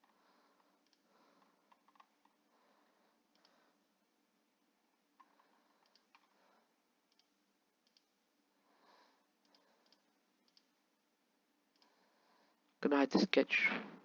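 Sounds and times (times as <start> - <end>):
computer mouse clicks: 0.8 - 2.4, 3.3 - 3.6, 5.2 - 6.4, 7.1 - 8.1, 9.4 - 10.8, 11.7 - 12.0.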